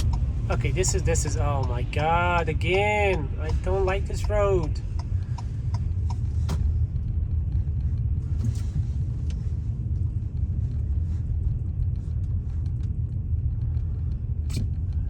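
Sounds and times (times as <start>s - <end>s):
car driving on snowy road: 0.0s - 15.0s.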